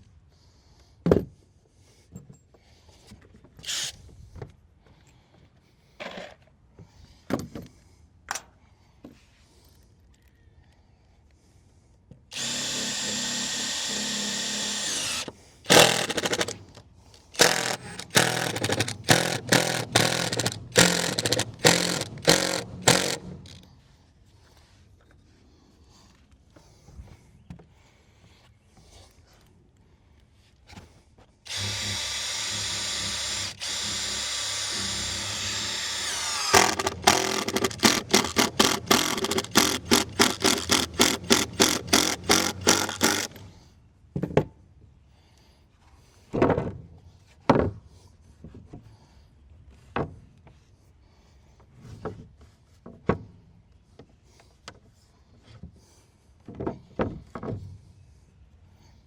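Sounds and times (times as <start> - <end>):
power drill driving a screw: 3.6 - 4.0, 12.3 - 23.7, 31.5 - 43.6.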